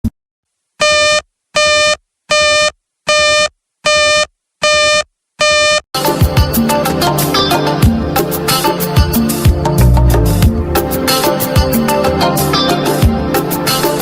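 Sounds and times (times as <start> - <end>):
background music: 6.0 - 14.0.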